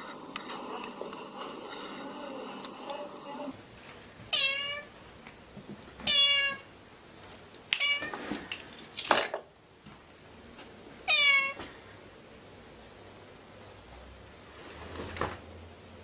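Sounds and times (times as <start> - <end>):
cat meowing: 4.3 - 4.9, 6.1 - 6.7, 11.1 - 11.6.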